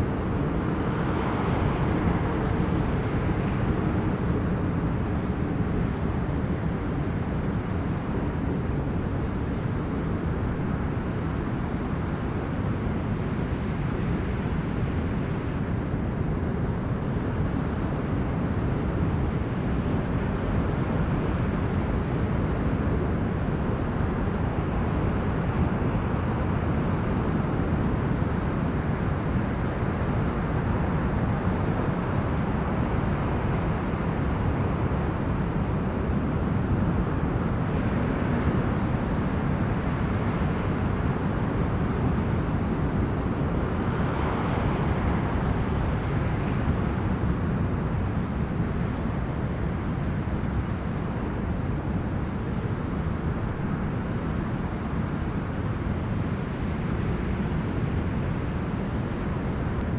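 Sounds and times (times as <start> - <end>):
strong wind blowing: 41.1 - 59.9.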